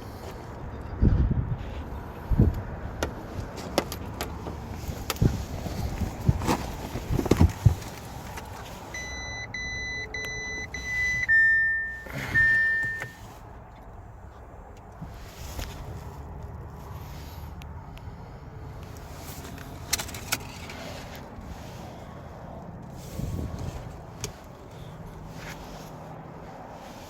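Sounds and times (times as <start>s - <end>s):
car warning chime beeps: 8.9s - 13.2s.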